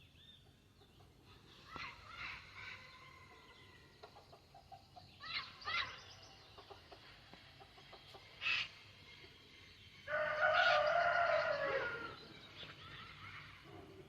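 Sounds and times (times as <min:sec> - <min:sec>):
rooster crowing: 0:10.1 - 0:12.2.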